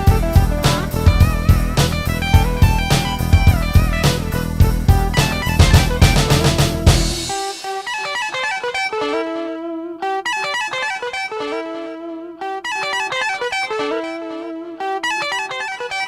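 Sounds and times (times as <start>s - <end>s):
electric guitar riff: 0.0s - 16.0s.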